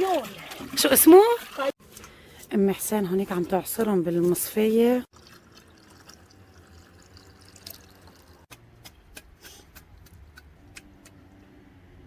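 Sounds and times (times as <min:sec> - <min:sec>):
juice dripping through strainer: 0:05.1 - 0:08.5.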